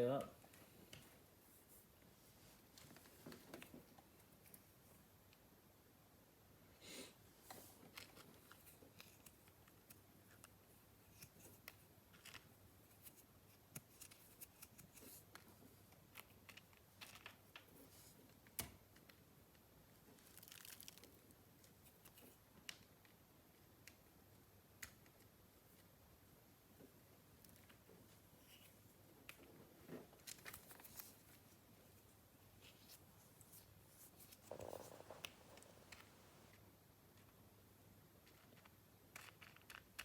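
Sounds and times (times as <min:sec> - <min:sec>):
faint clicks and rustles: 0:00.3 - 0:05.4, 0:26.8 - 0:37.4.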